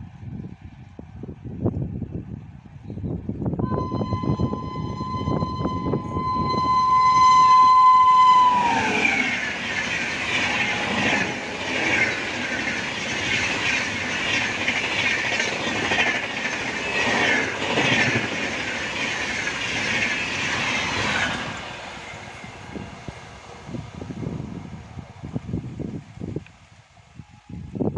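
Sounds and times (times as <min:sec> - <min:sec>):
train horn long note: 0:03.6 - 0:11.7
train wheels clattering: 0:07.2 - 0:23.1.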